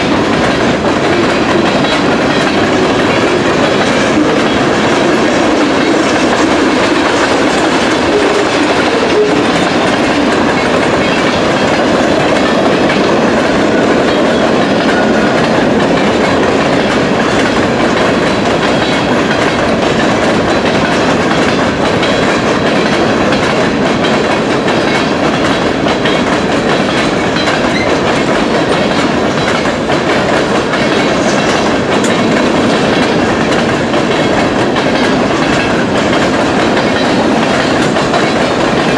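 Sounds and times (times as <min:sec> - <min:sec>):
freight train wheels clickety-clack: 0:00.0 - 0:38.9.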